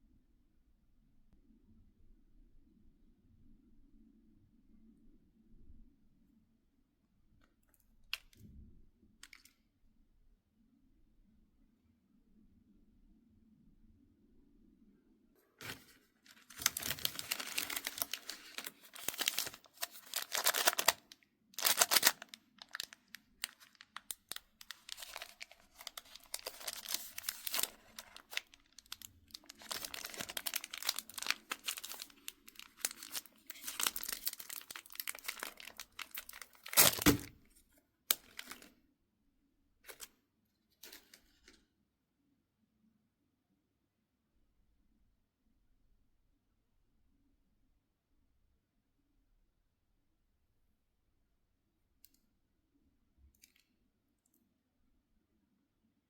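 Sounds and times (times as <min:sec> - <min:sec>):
plastic wrappers crinkling and tearing: 0:15.6 - 0:37.3, 0:38.1 - 0:38.7.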